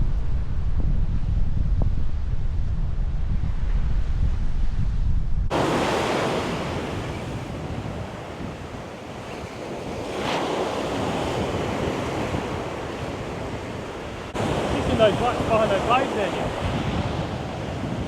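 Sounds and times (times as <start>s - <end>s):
wind buffeting microphone: 0.0s - 18.0s
surf breaking on beach: 5.5s - 18.0s.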